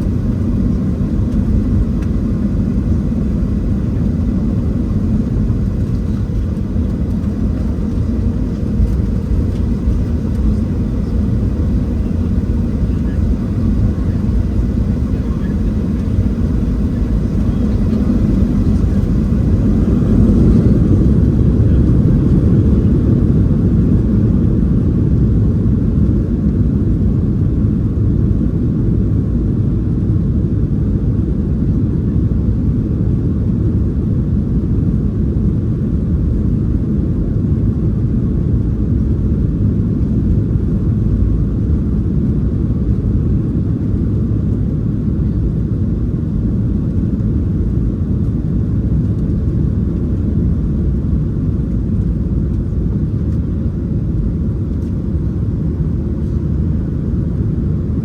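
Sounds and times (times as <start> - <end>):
airflow past fuselage: 0.0 - 22.9
jet engine rumble in cabin: 0.0 - 58.0.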